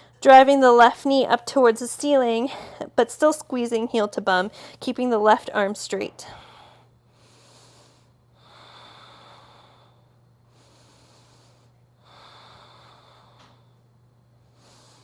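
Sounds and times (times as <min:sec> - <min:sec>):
steady low hum: 0:00.0 - 0:15.0
person breathing slowly: 0:06.3 - 0:13.8, 0:14.4 - 0:15.0.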